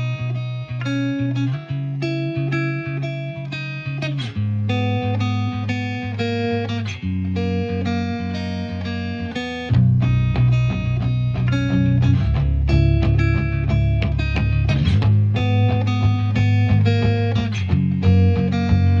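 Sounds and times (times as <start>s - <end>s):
plucked guitar melody: 0.0s - 19.0s
low bass line: 9.7s - 19.0s.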